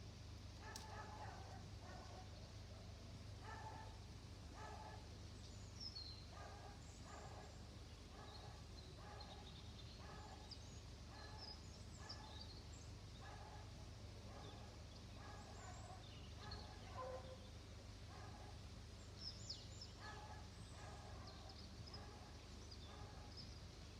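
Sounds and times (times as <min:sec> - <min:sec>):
birds chirping: 0:00.7 - 0:02.5, 0:03.4 - 0:23.7.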